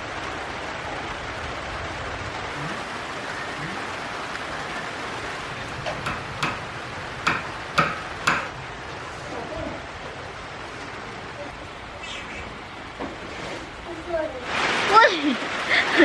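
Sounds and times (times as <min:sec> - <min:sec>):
steady rain: 0:00.0 - 0:16.0
sharp taps: 0:05.9 - 0:06.6, 0:07.2 - 0:08.6.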